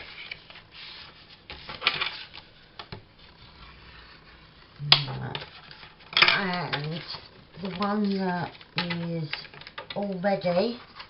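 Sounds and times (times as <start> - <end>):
card sheets rustling: 3.2 - 11.0.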